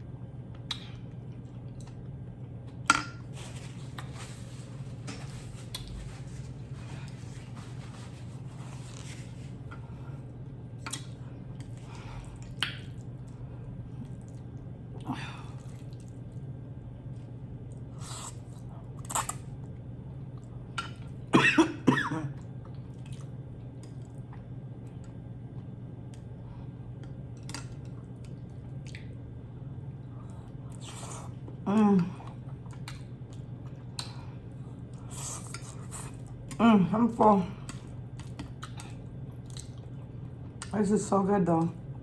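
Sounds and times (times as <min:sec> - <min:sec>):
steady low hum: 0:00.0 - 0:42.0
chewing and mouth sounds: 0:05.6 - 0:07.2, 0:10.8 - 0:13.4, 0:14.0 - 0:14.7, 0:15.5 - 0:16.5, 0:17.1 - 0:21.2, 0:22.4 - 0:26.3, 0:26.9 - 0:29.3, 0:32.2 - 0:36.6, 0:37.6 - 0:40.8
cough-like vocal sound: 0:21.3 - 0:22.4.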